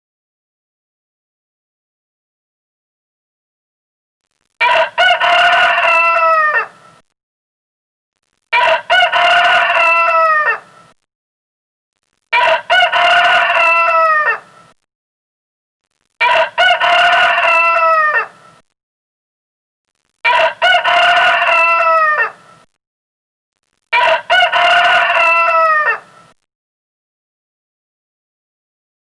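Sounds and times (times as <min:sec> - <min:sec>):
rooster crowing: 0:04.6 - 0:06.8, 0:08.6 - 0:10.8, 0:12.4 - 0:14.6, 0:16.2 - 0:18.4, 0:20.3 - 0:22.5, 0:24.0 - 0:26.2.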